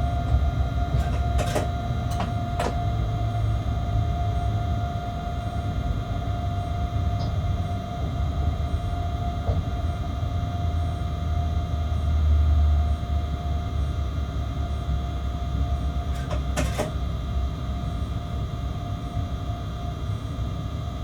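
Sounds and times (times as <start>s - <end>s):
locomotive low rumble with whining: 0.0s - 21.0s.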